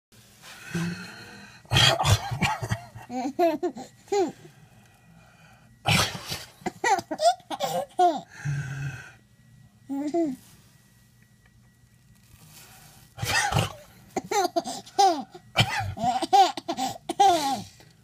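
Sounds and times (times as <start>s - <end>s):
man sneezing: 5.9s - 6.5s, 13.2s - 13.9s
baby giggling: 14.2s - 15.3s.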